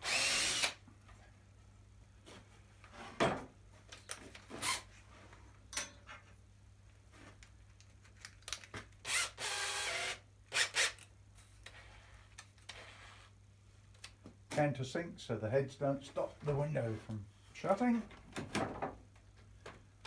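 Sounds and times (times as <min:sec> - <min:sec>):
power drill drilling: 0:00.0 - 0:00.8, 0:09.1 - 0:11.0.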